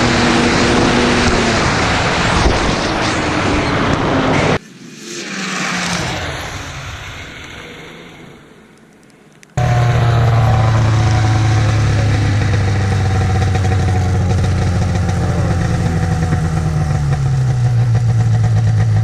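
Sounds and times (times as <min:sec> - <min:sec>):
snowmobile engine running: 0:00.0 - 0:07.8, 0:09.6 - 0:19.0.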